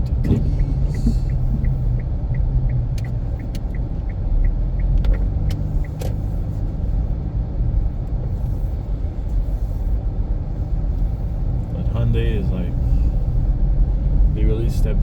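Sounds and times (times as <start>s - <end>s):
car engine and tyres rumbling: 0.0s - 15.0s
turn signal ticking: 0.0s - 15.0s.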